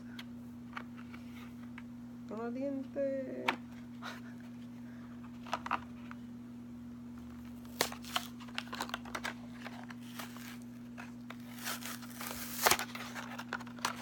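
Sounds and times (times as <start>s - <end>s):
steady low hum: 0.0s - 14.0s
packaging crinkling and tearing: 7.6s - 14.0s.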